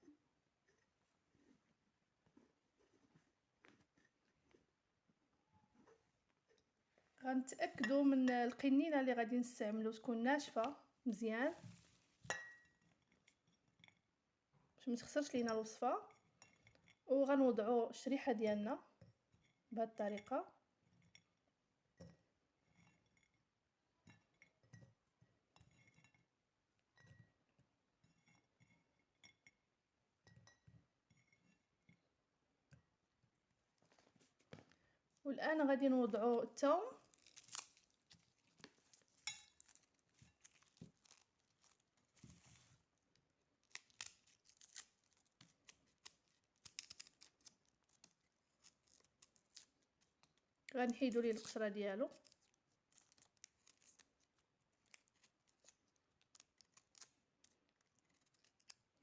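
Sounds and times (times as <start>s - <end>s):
garlic skin crackling: 37.0s - 59.0s.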